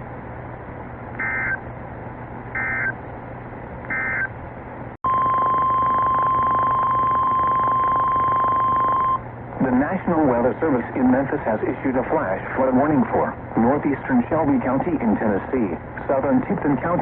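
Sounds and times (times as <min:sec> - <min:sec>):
steady warning alarm tone: 0:01.2 - 0:01.6, 0:02.6 - 0:03.0, 0:03.9 - 0:04.3, 0:05.1 - 0:09.2
radio static: 0:09.6 - 0:17.0.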